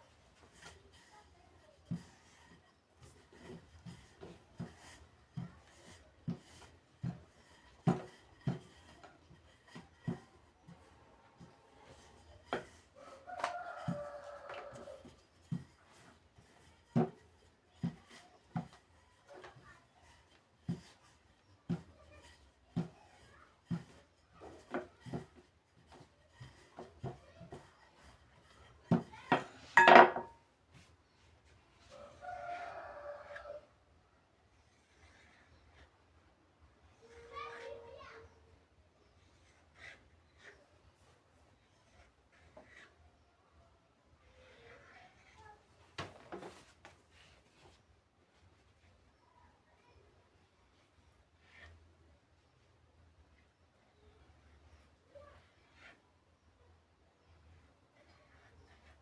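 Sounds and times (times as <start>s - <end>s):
knife knocking on wooden board: 28.9s - 30.3s.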